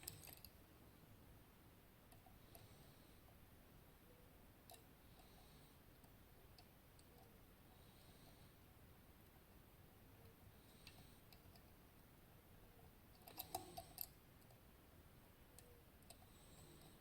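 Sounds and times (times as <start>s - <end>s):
metallic clicking of lock picks: 0.0s - 0.5s.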